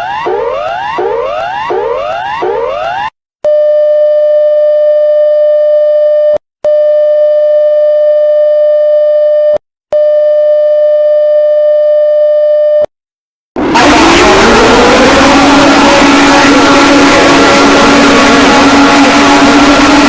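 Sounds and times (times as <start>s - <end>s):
buzzy alarm tone blasts: 13.6s - 20.0s.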